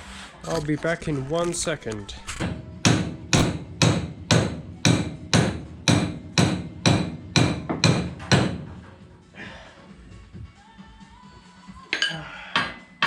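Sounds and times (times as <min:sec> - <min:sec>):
hammer striking metal: 0:02.3 - 0:08.8.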